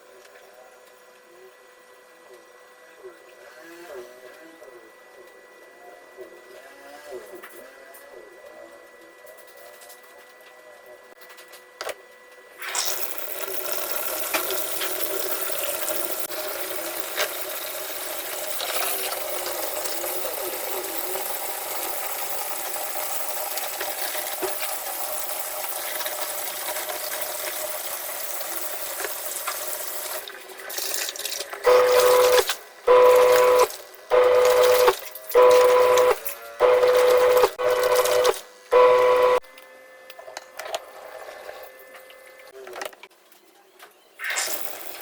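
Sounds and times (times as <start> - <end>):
washing machine hum: 11.8 - 39.4
tap water running: 12.6 - 39.4, 44.3 - 45.0.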